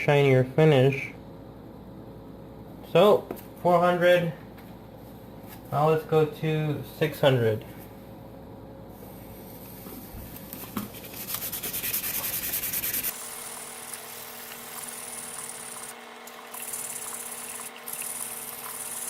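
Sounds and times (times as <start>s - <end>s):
hand sanding metal: 11.0s - 13.2s.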